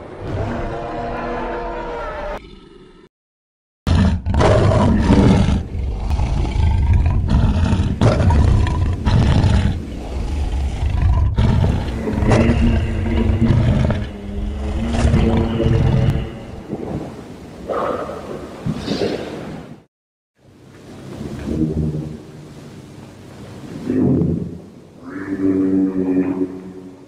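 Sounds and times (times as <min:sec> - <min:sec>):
pitched roar: 0:00.1 - 0:03.1, 0:03.9 - 0:16.7
deep growling dinosaur roars: 0:03.9 - 0:18.0.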